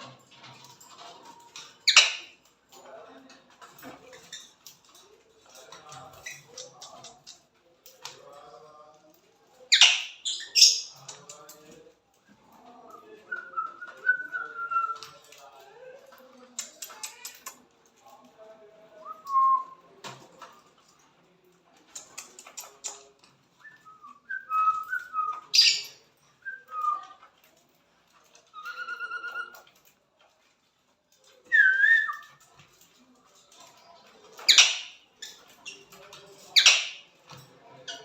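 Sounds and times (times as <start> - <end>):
small parrots whistling and chirping: 1.8 - 2.3, 9.7 - 11.0, 24.5 - 27.1, 28.5 - 29.6, 34.4 - 34.9, 36.6 - 37.0.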